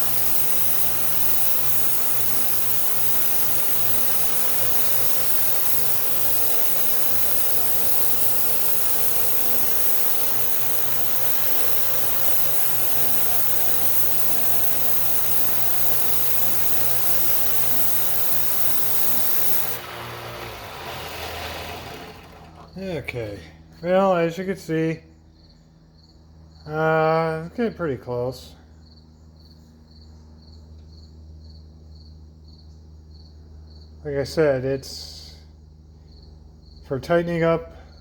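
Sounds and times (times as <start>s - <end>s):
grinding hiss of sanding: 0.0s - 22.6s
belt sander motor hum: 0.0s - 22.8s.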